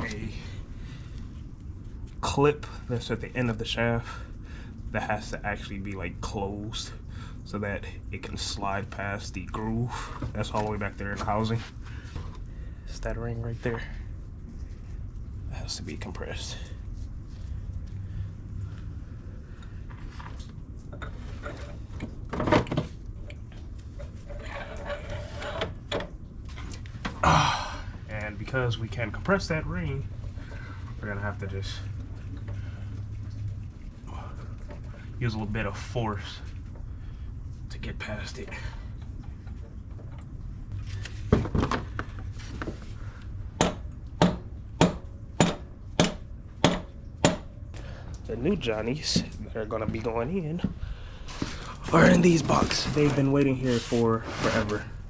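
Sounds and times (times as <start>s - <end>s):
metallic clinks and scrapes: 24.0s - 25.8s.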